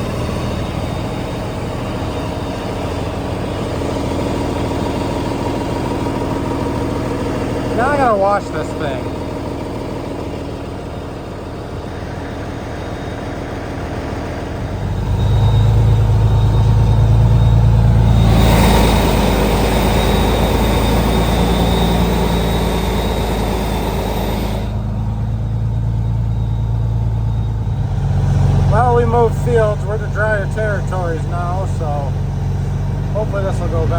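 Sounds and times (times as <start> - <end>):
truck diesel engine running: 0.0 - 33.9
rush of noise: 14.6 - 25.0.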